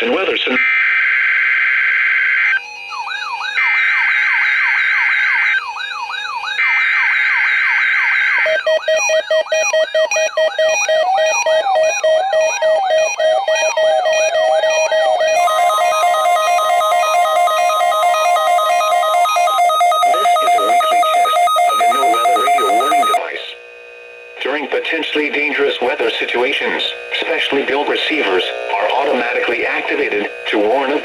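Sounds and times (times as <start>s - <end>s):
electronic siren wail: 0.8s - 23.3s
slow warbling tone: 15.4s - 23.2s
two-tone data bursts buzzing: 15.4s - 23.2s.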